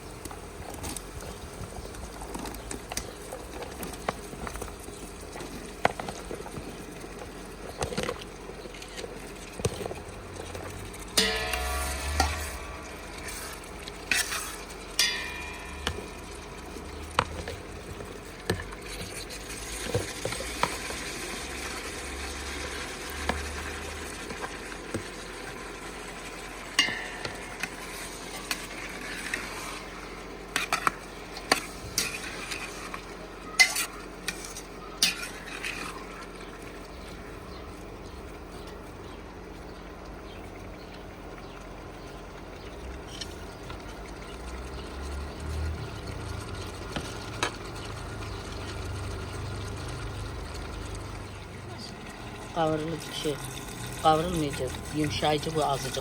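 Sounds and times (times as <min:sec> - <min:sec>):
onions sizzling in a pan: 0:11.1 - 0:17.1.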